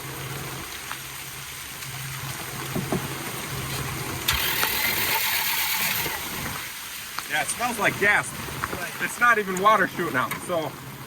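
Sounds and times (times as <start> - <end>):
heavy rain hiss: 0.0 - 11.0
starter cranking engine: 4.3 - 6.2.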